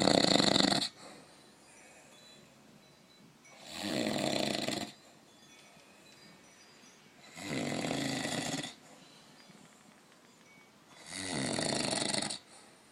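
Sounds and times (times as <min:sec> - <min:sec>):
man snoring: 0:00.0 - 0:01.0, 0:03.6 - 0:05.0, 0:07.3 - 0:08.8, 0:11.0 - 0:12.5.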